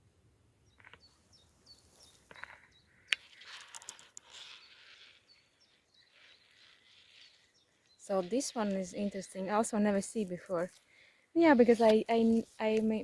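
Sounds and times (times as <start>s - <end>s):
small birds chirping: 0.0s - 13.0s
footsteps on forest floor: 11.5s - 13.0s.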